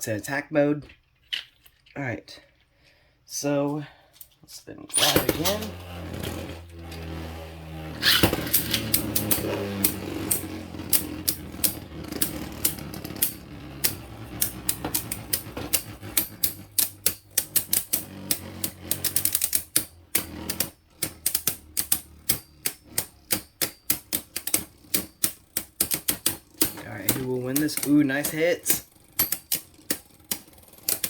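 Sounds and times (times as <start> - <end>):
low spinning whir: 5.0 - 19.2
spinning tops clicking together: 8.0 - 31.0.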